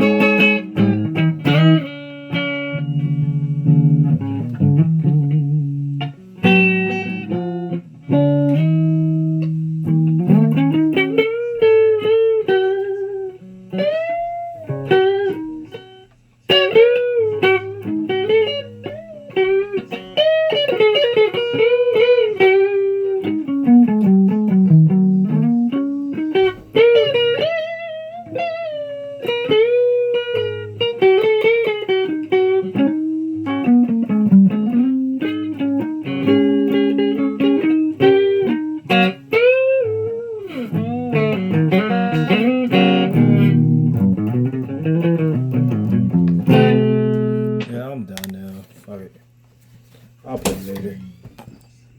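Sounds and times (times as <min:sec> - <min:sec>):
electric guitar lead lines: 0:00.0 - 0:49.1.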